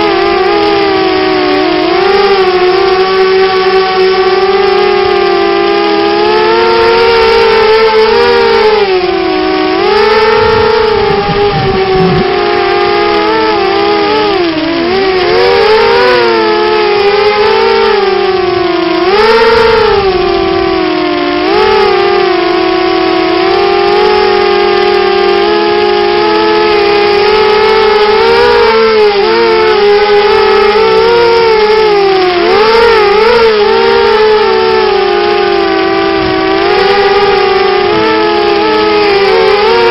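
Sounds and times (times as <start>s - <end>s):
quadcopter motors whining: 0.0s - 39.9s.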